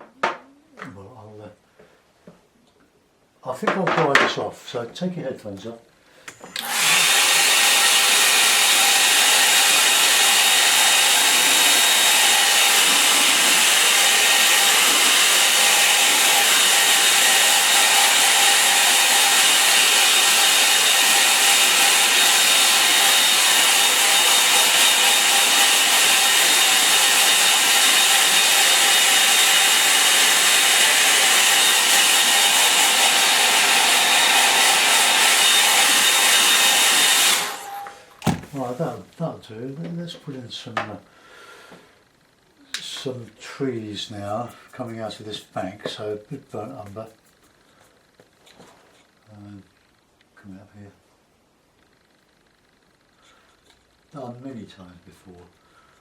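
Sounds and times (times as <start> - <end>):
hair dryer blowing: 6.4 - 38.5.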